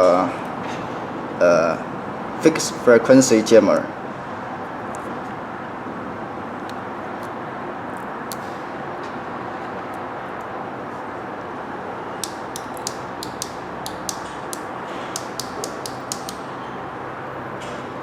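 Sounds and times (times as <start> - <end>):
sharp irregular clicks: 8.3 - 8.6, 12.2 - 16.4.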